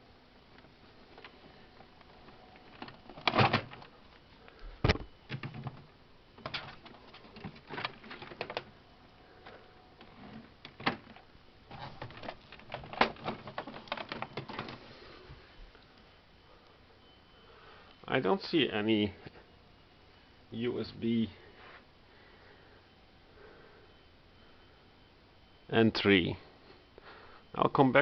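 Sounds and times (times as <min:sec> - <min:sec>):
hands handling plastic printer: 0:00.6 - 0:04.0, 0:04.8 - 0:08.7, 0:09.4 - 0:14.8.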